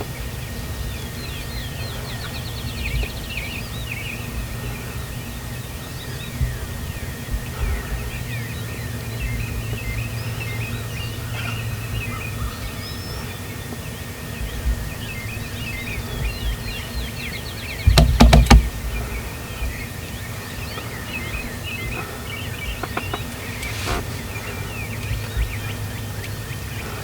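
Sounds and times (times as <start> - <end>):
low outdoor hum: 0.0 - 27.0
songbirds chirping and trilling: 0.0 - 27.0
sharp loud knocks: 17.9 - 18.9.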